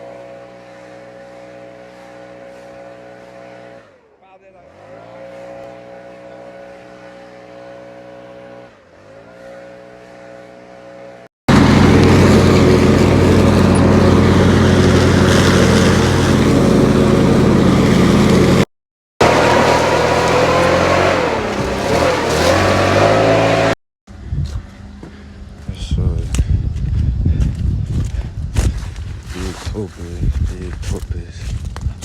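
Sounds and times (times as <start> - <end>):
engine running: 0.0 - 26.4.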